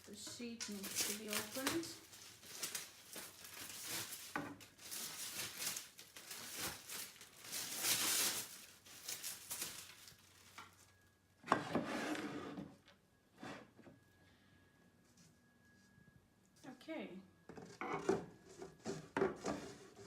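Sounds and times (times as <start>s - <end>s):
packaging crinkling and rustling: 0.0s - 11.1s.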